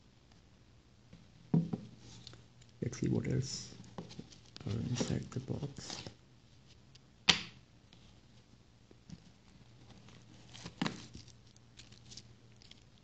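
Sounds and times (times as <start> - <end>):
low steady hum: 0.0 - 13.0
cardboard box rustling: 9.8 - 11.3.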